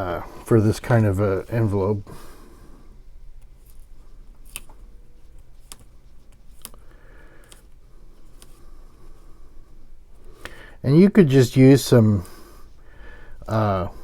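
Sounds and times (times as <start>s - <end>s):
paper envelope rustling: 3.3s - 8.6s.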